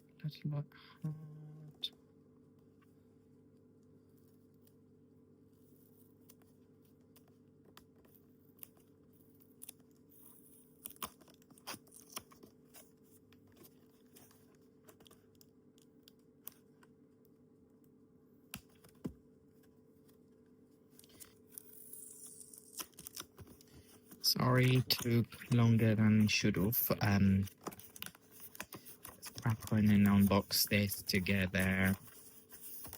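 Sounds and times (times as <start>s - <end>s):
faint steady hum: 0.0s - 32.9s
packaging tearing and crinkling: 21.1s - 23.7s.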